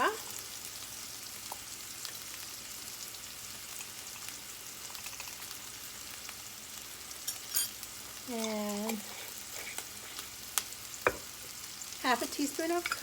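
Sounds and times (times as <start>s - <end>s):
oil crackling: 0.0s - 6.6s
food sizzling in oil: 0.0s - 13.0s.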